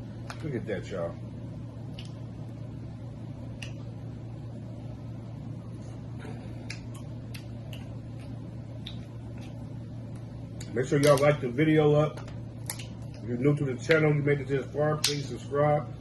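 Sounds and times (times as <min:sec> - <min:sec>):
steady low hum: 0:00.0 - 0:16.0
eating smacks and clicks: 0:01.9 - 0:02.2, 0:03.5 - 0:03.9, 0:06.6 - 0:11.3, 0:12.6 - 0:13.3.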